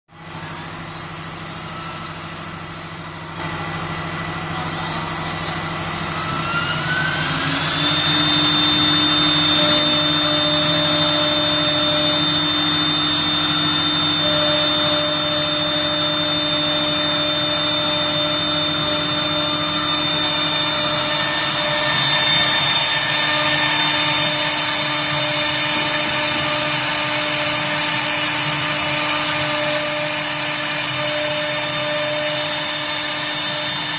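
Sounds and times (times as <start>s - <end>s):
electric spindle whine: 0.1s - 33.9s.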